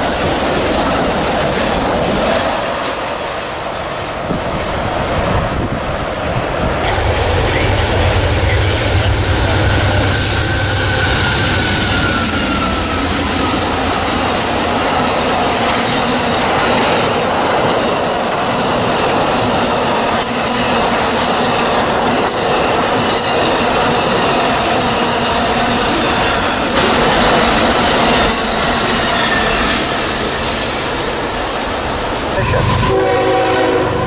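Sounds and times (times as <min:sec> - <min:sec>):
train cars rolling on rails: 0:00.0 - 0:34.0
high wheel squeal: 0:09.5 - 0:14.3, 0:23.3 - 0:30.6.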